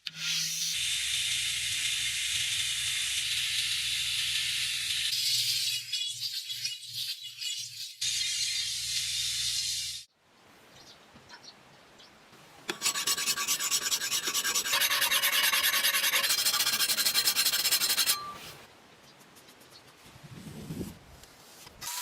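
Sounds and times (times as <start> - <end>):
tool rasping against steel: 12.7 - 18.6.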